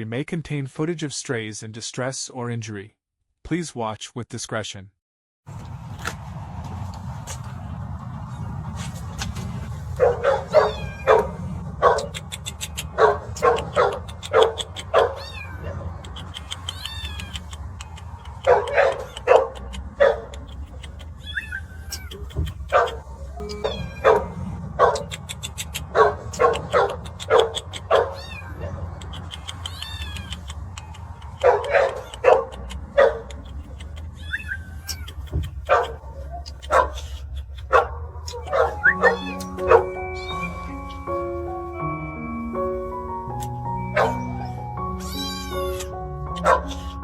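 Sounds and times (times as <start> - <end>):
steady low rumble: 5.5 - 21.3, 21.9 - 38.9
kitten meowing: 10.4 - 11.4, 14.4 - 17.9, 21.0 - 22.4, 23.4 - 24.4, 27.8 - 30.9, 34.0 - 35.4, 38.3 - 40.7, 44.1 - 47.0.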